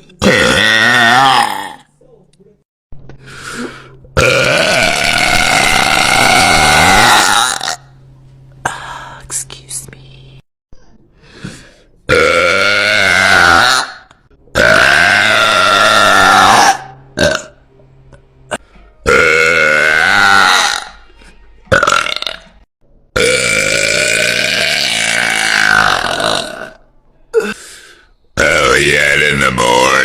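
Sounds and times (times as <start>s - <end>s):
woman belching loudly: 0.2s - 1.9s, 4.2s - 7.9s, 12.1s - 17.6s, 19.0s - 21.0s, 21.7s - 22.6s, 23.2s - 26.8s.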